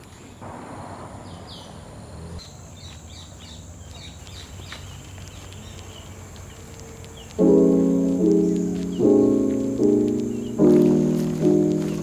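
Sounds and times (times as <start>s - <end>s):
small birds chirping: 1.1s - 12.0s
high insect trill: 2.4s - 12.0s.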